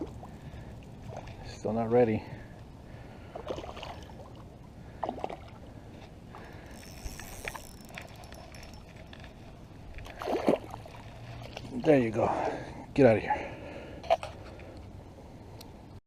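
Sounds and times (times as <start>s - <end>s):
water splashing and sloshing: 0.0s - 12.7s.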